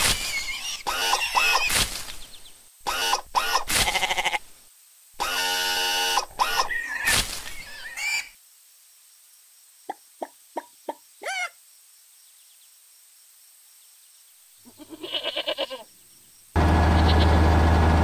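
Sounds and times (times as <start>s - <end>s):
cartoon animal bleating calls: 0.2s - 1.7s, 2.9s - 4.5s, 5.2s - 8.3s, 14.6s - 15.9s.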